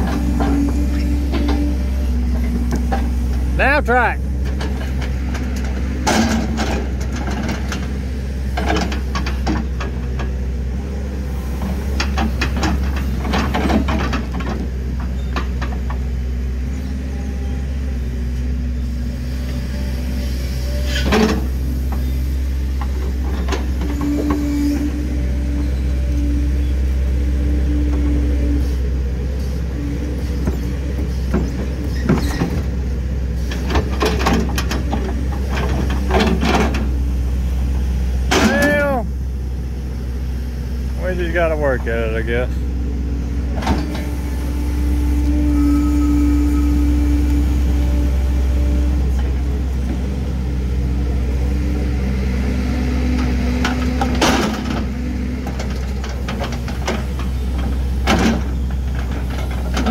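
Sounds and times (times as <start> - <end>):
excavator diesel engine running: 0.0 - 59.9
knocks and clanks: 38.3 - 38.9, 53.6 - 59.9.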